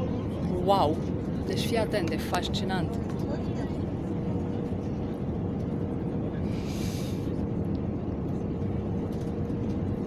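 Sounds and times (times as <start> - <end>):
jet engine and airflow rumble: 0.0 - 10.0.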